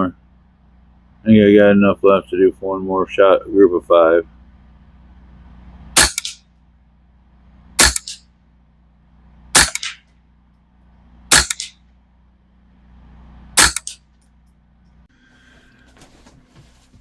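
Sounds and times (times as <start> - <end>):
rifle shots with echo: 6.0 - 6.4, 7.8 - 8.2, 9.6 - 10.0, 11.3 - 11.8, 13.6 - 14.0.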